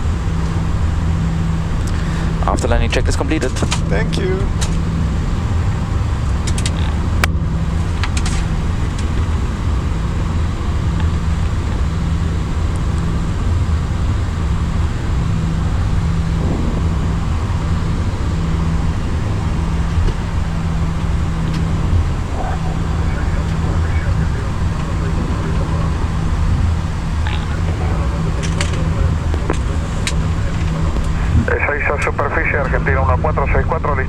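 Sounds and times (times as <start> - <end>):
aircraft engines idling rumble: 0.0 - 34.0.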